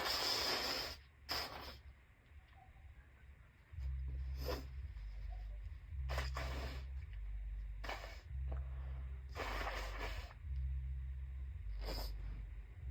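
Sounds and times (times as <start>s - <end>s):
person sniffing: 0.0s - 1.9s, 4.3s - 4.8s, 6.1s - 7.0s, 7.8s - 8.4s, 9.3s - 10.4s, 11.7s - 12.4s.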